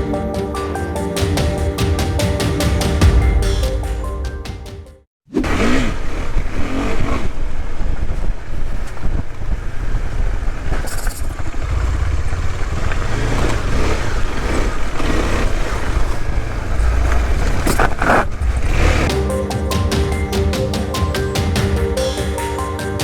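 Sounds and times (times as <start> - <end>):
music: 0.0 - 5.1, 19.1 - 23.0.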